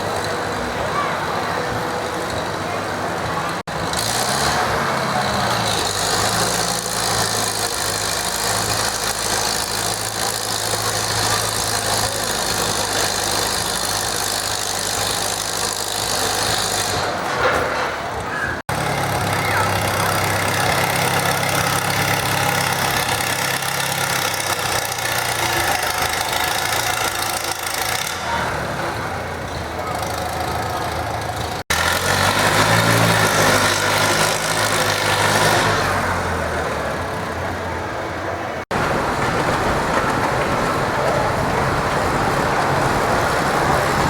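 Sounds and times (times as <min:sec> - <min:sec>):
tractor engine running: 0:00.0 - 0:44.0.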